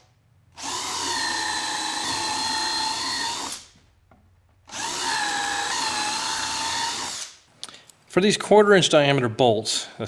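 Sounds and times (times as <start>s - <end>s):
electric drill whining: 0.6s - 3.8s, 4.7s - 7.4s.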